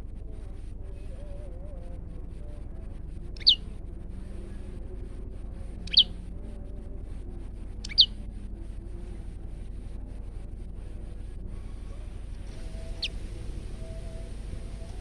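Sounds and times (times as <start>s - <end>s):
steady low hum: 0.0s - 15.0s
bird whistled calls: 3.4s - 3.6s, 5.8s - 6.1s, 7.8s - 8.2s, 12.8s - 13.2s.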